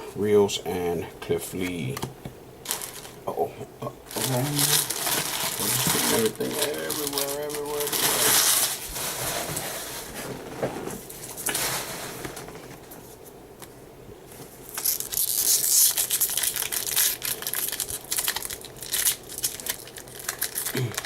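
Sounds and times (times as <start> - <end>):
foil wrapper crinkling and tearing: 2.6 - 3.2, 4.1 - 10.0, 14.7 - 21.0
cards being handled: 4.2 - 8.8.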